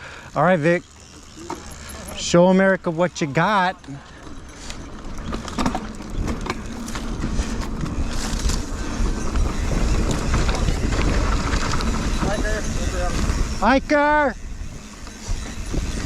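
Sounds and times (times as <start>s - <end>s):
bike tyre noise on dirt: 0.0s - 16.0s
bike knocks and rattles: 0.7s - 13.7s
wind buffeting microphone: 4.4s - 16.0s.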